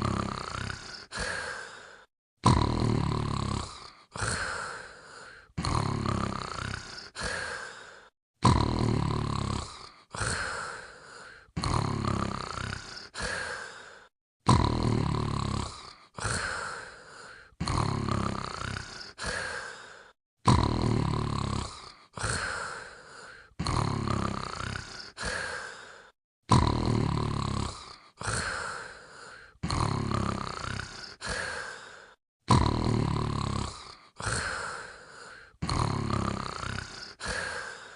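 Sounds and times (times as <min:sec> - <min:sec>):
dog snoring: 0:00.0 - 0:01.3, 0:02.4 - 0:04.3, 0:05.6 - 0:07.4, 0:08.4 - 0:10.0, 0:11.6 - 0:13.2, 0:14.5 - 0:16.4, 0:17.6 - 0:19.3, 0:20.5 - 0:22.3, 0:23.6 - 0:25.4, 0:26.5 - 0:28.4, 0:29.6 - 0:31.4, 0:32.5 - 0:34.4, 0:35.6 - 0:37.8.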